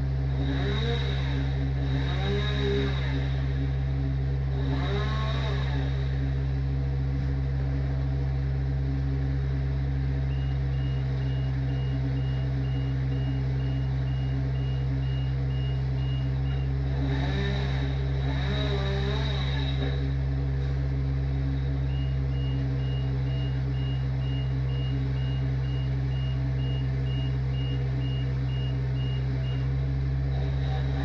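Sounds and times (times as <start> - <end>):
low mechanical hum: 0.0 - 31.0
high electronic beeps: 10.3 - 16.7, 21.8 - 29.7.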